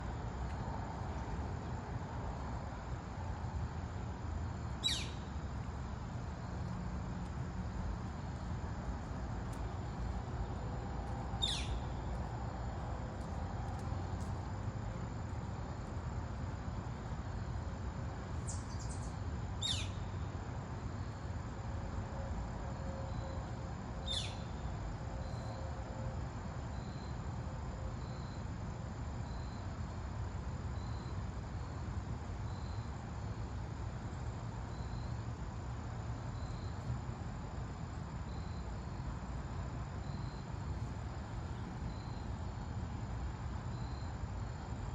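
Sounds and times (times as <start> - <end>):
low background noise: 0.0 - 44.9
bird calling sharp high calls: 11.4 - 11.8.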